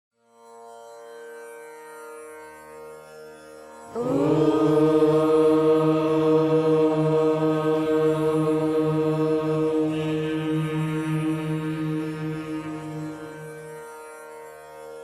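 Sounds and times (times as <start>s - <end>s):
soft steady drone: 3.9s - 14.1s
long chanted note: 3.9s - 14.2s.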